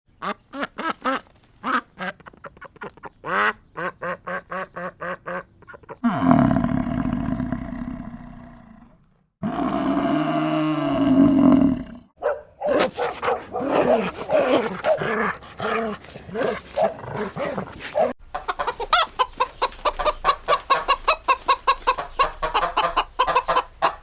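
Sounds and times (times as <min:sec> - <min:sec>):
ducks quacking: 0:00.1 - 0:06.0, 0:12.7 - 0:24.0
buffalo low calls: 0:13.5 - 0:18.2.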